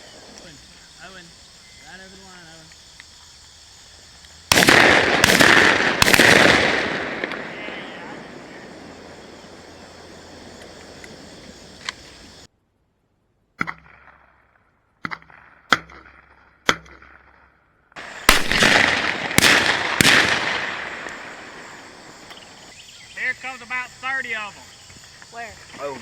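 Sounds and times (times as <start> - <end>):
shotgun shots with echo: 4.5 - 7.8, 18.0 - 21.8.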